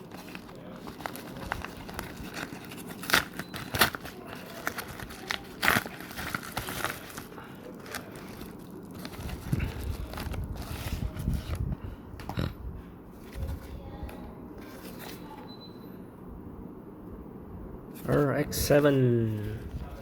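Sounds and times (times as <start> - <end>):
envelope tearing and crinkling: 0.0 - 12.6.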